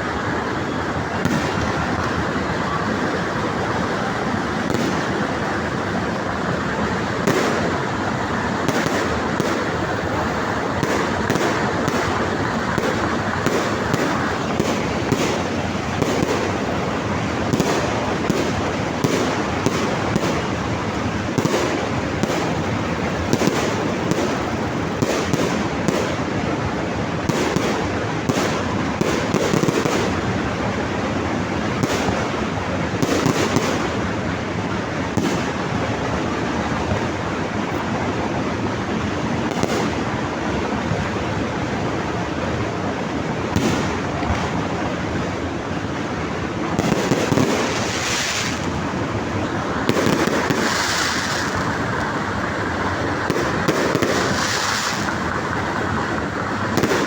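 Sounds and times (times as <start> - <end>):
fireworks bangs: 0.0 - 57.0
fireworks crackling: 0.0 - 57.0.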